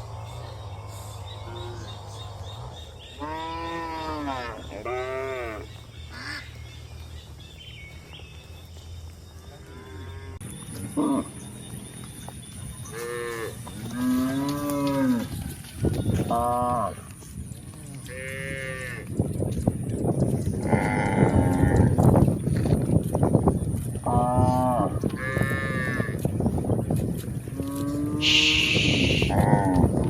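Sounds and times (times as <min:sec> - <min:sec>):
cows mooing: 0:00.0 - 0:06.5, 0:09.6 - 0:11.5, 0:12.8 - 0:19.2, 0:20.5 - 0:22.2, 0:24.0 - 0:26.4, 0:27.5 - 0:30.0.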